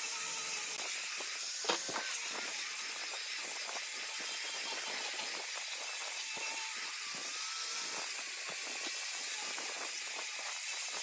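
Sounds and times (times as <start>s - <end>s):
power tool working wood: 0.0s - 11.0s.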